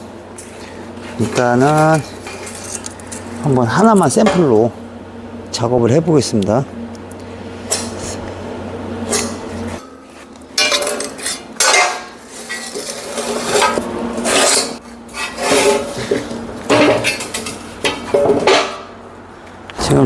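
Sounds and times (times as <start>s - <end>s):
steel parts clanking and scraping: 0.4s - 4.7s, 9.0s - 19.0s.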